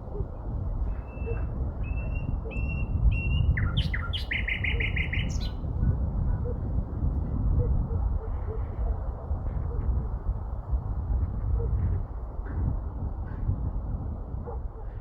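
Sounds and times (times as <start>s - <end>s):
sparrow singing: 0.9s - 5.6s.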